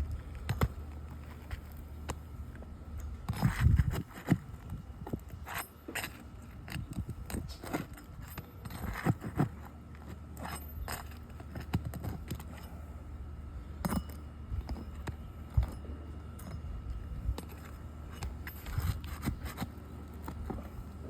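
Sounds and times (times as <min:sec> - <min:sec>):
metal tools scraping on shingles: 0:00.2 - 0:21.0.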